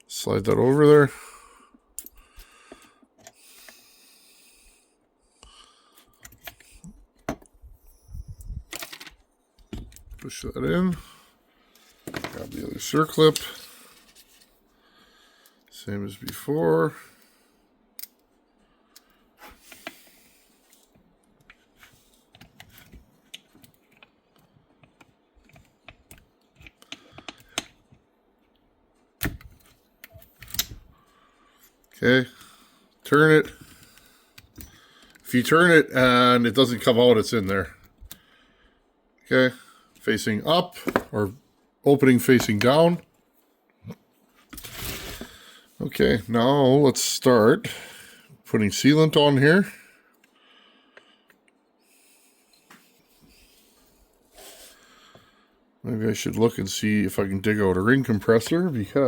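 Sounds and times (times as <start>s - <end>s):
soft breathing through the nose: 1.1s - 7.1s, 13.5s - 15.7s, 18.5s - 21.0s, 30.9s - 33.0s, 38.1s - 39.0s, 49.7s - 55.8s.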